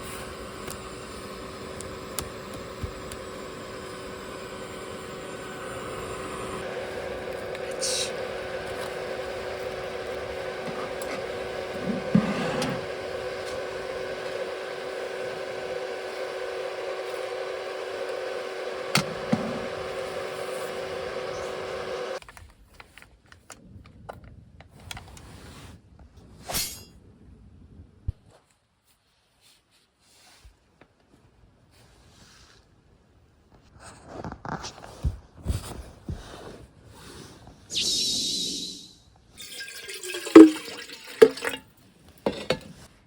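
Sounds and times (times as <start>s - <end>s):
machine hum with fixed tones: 0.0s - 22.2s, 37.7s - 39.1s.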